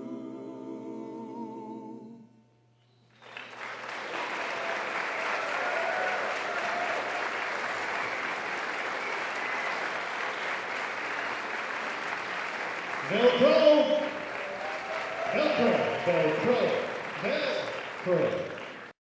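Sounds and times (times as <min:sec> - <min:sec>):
quartet singing a chord: 0:00.0 - 0:02.6
audience applause: 0:03.2 - 0:19.0.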